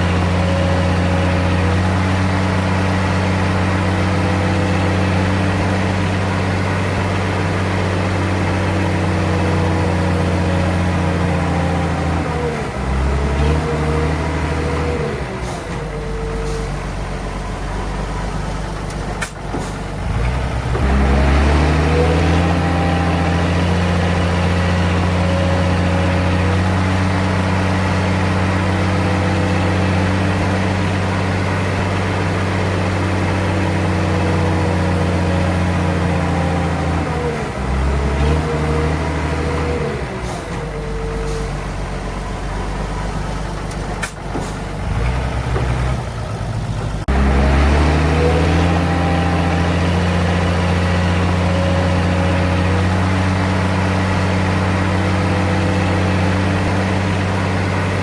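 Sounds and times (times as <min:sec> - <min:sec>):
bulldozer diesel engine running: 0:00.0 - 0:58.0
sharp click: 0:18.8 - 0:19.8.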